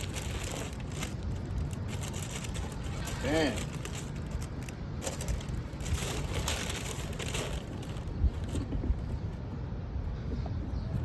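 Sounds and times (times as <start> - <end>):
tissue paper rustling: 0.0 - 8.1.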